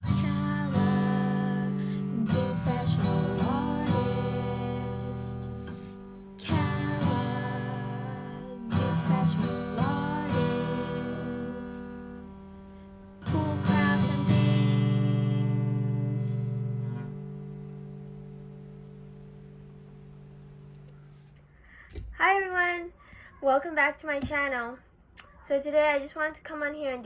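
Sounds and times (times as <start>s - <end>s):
plucked string chords: 0.0s - 21.2s.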